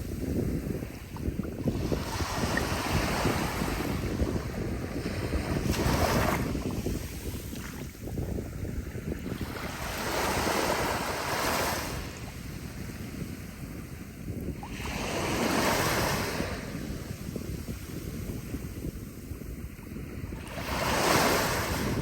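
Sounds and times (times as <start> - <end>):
ocean waves breaking on beach: 0.0 - 22.0
wind rumble on microphone: 0.0 - 22.0.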